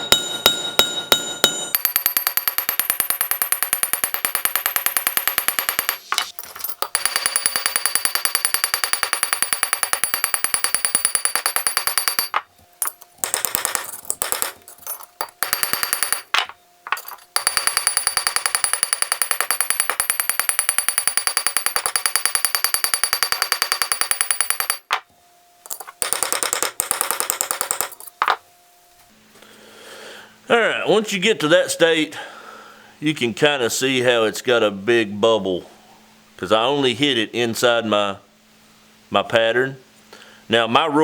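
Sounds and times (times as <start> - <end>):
hammer striking copper: 0.0 - 25.0.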